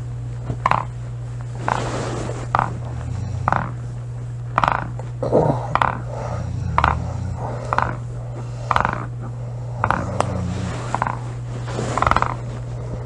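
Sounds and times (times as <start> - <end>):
steady low hum: 0.0 - 13.0
woman snoring: 2.6 - 3.8, 5.2 - 11.2.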